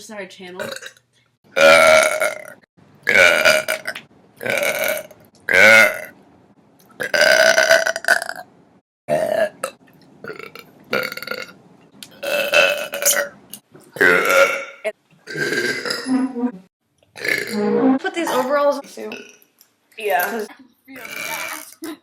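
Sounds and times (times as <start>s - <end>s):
girl burping loudly: 0.6s - 1.0s, 1.6s - 6.1s, 14.0s - 16.1s, 17.2s - 17.7s, 20.2s - 22.0s.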